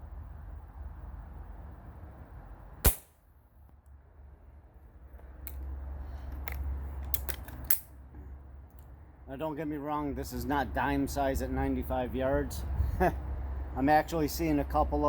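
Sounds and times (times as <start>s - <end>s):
air rifle shot: 2.8s - 3.2s
wind rumble on microphone: 10.9s - 13.8s.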